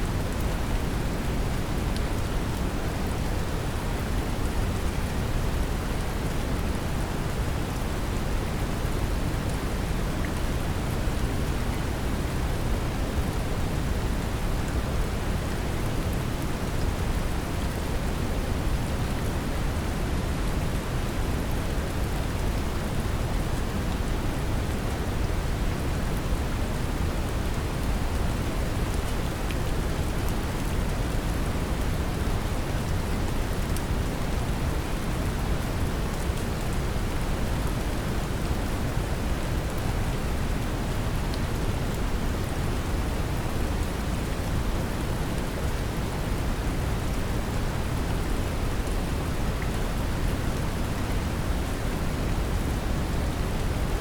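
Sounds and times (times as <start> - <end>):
brown noise rumbling hiss: 0.0 - 54.0
gentle rain: 0.0 - 54.0.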